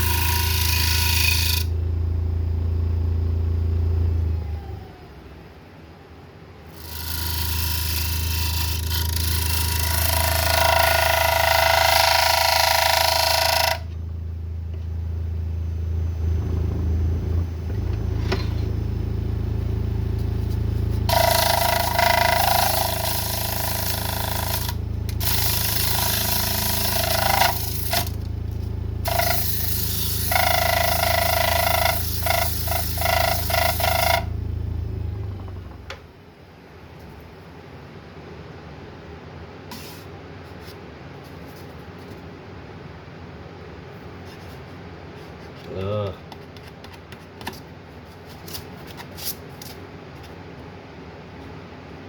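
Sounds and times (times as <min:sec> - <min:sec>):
tool cutting wood: 0:00.0 - 0:01.8, 0:06.7 - 0:14.0, 0:21.0 - 0:34.4
lathe motor hum: 0:00.0 - 0:04.4, 0:06.8 - 0:36.0.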